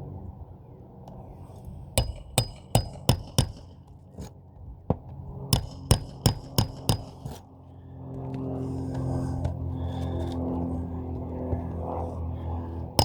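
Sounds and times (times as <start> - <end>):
hammer blows on metal: 2.0 - 3.8, 5.6 - 7.3.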